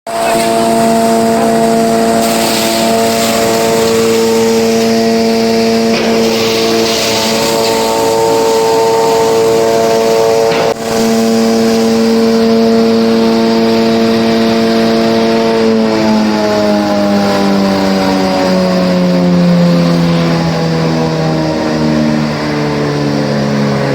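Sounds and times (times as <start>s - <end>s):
crusher machine whining: 0.0s - 23.9s
charcoal crunching: 0.2s - 12.4s.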